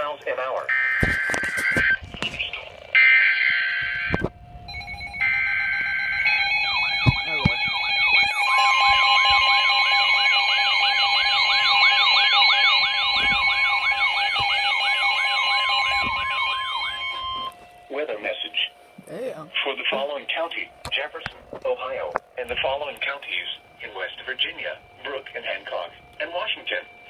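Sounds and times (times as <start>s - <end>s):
warbling siren-like alert tone: 2.9s - 22.0s
steady alert tones: 4.7s - 21.2s
digital data screech: 8.2s - 9.6s.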